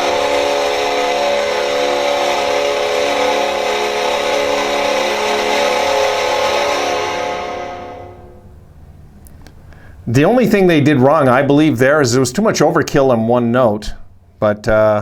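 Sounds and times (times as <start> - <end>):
goal horn blast: 0.0 - 8.6.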